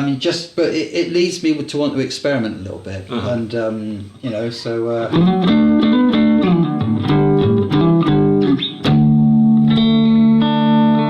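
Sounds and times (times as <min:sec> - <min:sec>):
electric guitar playing: 0:05.1 - 0:11.0.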